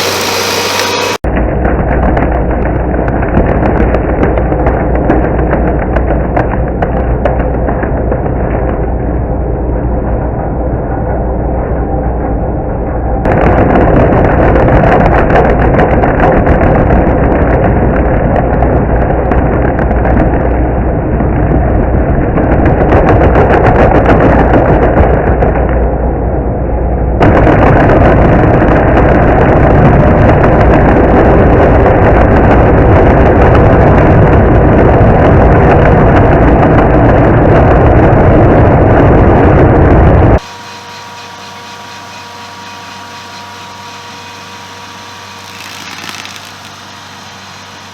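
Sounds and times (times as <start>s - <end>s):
stump grinder engine running rough: 0.0s - 8.3s, 41.8s - 47.9s.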